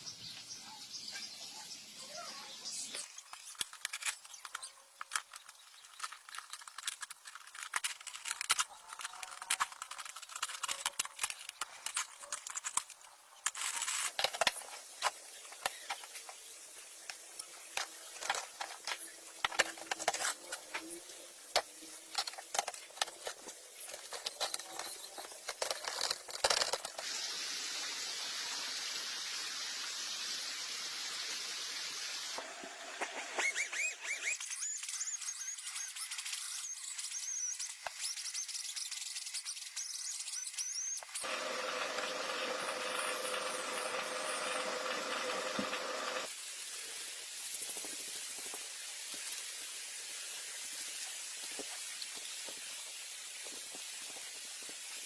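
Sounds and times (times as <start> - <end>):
steady hiss: 11.2 - 33.2, 44.8 - 55.0.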